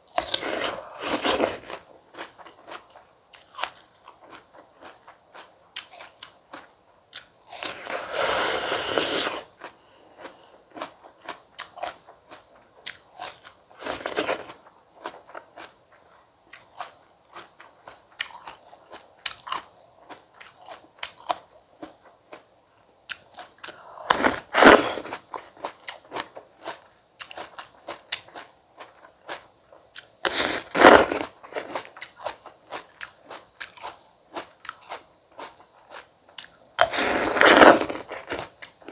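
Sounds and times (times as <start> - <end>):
person chewing fruit: 0.1 - 22.4, 23.1 - 38.9
crunchy bites: 16.5 - 22.4, 23.1 - 38.9.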